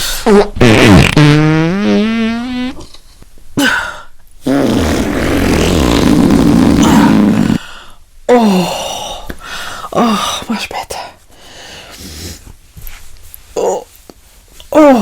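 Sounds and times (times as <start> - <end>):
comedy fart sounds: 0.2 - 3.0, 4.4 - 7.6.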